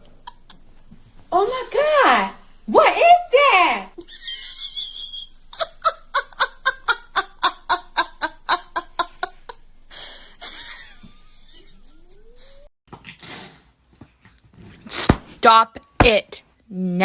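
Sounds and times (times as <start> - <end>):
high-pitched laughter: 4.0 - 12.7.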